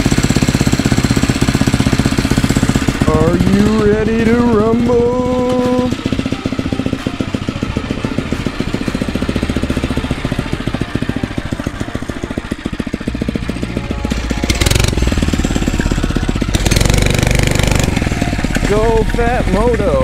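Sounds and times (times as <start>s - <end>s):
small engine running: 0.0s - 20.0s.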